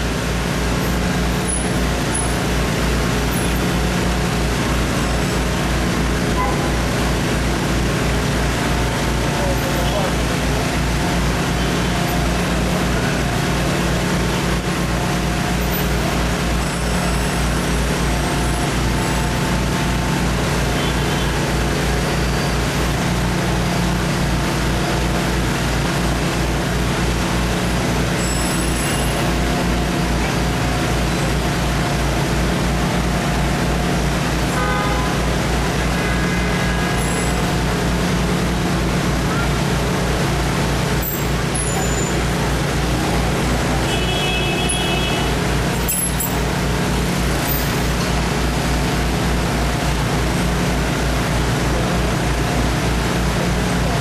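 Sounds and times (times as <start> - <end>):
large engine throbbing: 0.0 - 43.9
street traffic: 0.0 - 54.0
short horn tone: 6.3 - 6.8, 34.5 - 35.3, 35.9 - 37.5.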